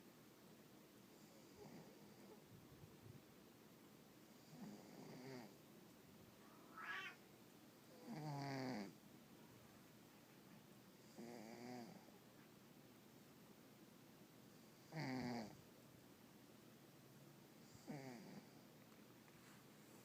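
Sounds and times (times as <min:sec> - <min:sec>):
cat snoring: 0:01.2 - 0:02.3, 0:04.3 - 0:05.6, 0:08.0 - 0:09.0, 0:11.0 - 0:12.1, 0:14.6 - 0:15.6, 0:17.6 - 0:18.6.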